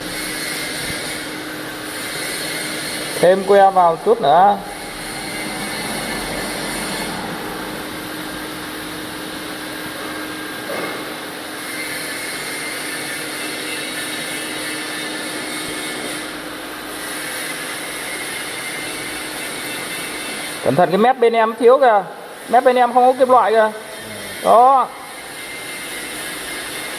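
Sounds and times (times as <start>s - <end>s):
welding arc hissing: 0.0s - 21.2s, 21.8s - 26.9s.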